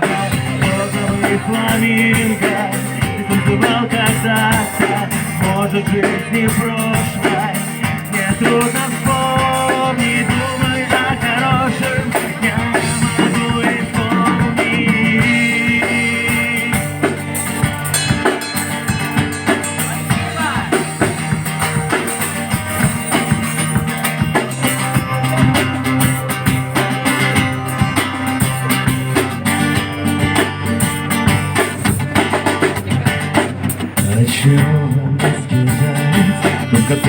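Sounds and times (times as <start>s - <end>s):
drum kit beat: 0.0s - 37.0s
guitar: 0.0s - 37.0s.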